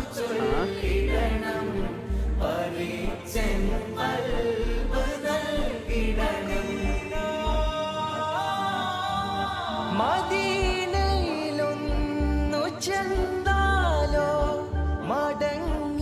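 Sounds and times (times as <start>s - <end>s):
music with sung vocals: 0.0s - 16.0s.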